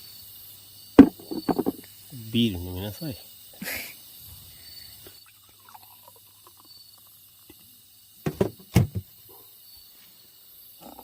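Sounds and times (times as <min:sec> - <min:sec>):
sharp knocks: 0:01.0 - 0:01.8.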